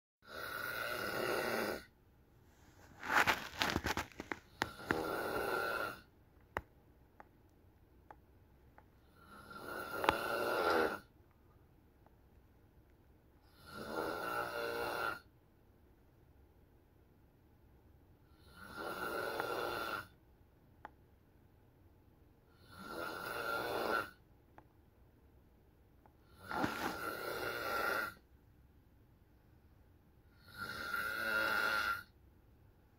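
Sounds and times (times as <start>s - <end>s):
person snoring: 0.2s - 1.9s, 3.0s - 6.1s, 9.0s - 11.1s, 13.5s - 15.3s, 18.3s - 20.2s, 22.5s - 24.2s, 26.2s - 28.2s, 30.3s - 32.2s
quiet breaths: 0.2s - 6.2s, 8.7s - 11.6s.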